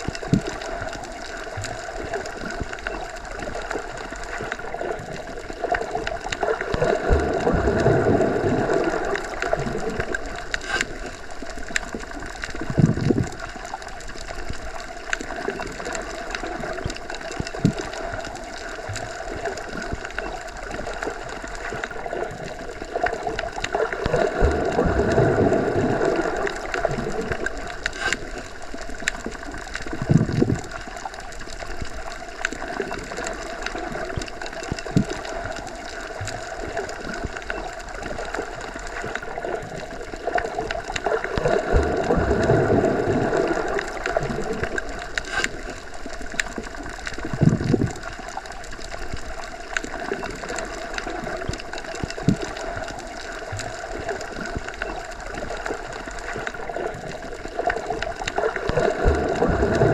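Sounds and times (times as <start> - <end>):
small clicks: 9.0 - 24.4, 26.1 - 41.6, 43.8 - 58.8.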